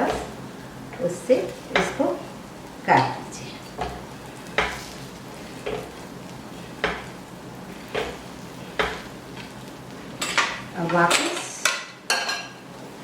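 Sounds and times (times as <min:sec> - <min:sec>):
soft sizzle: 0:00.0 - 0:13.0.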